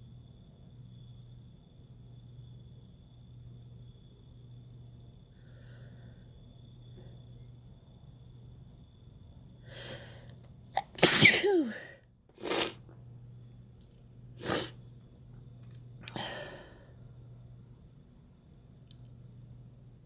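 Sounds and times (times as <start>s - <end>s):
person sneezing: 10.8s - 12.8s, 14.4s - 14.8s.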